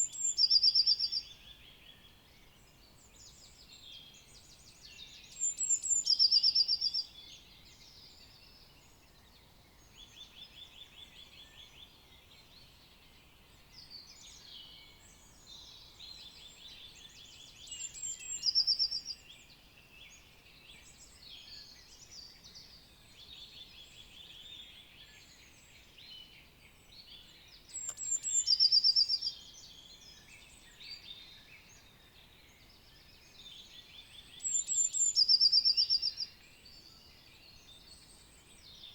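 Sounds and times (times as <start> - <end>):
songbirds chorus: 0.0 - 38.9
nearby bird loud short song: 26.9 - 38.9.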